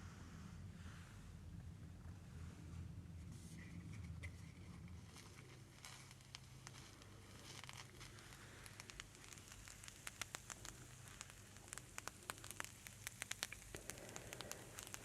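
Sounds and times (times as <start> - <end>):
crackling clicks and pops: 3.7 - 15.0.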